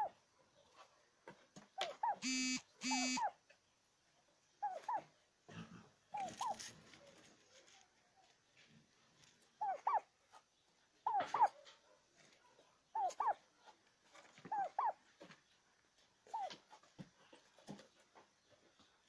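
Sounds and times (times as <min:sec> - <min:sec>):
short buzzy tones: 0:02.2 - 0:03.3
dog whimpering: 0:04.6 - 0:05.1, 0:09.6 - 0:10.1, 0:11.0 - 0:11.6, 0:13.0 - 0:13.4, 0:14.5 - 0:15.0, 0:16.3 - 0:16.6.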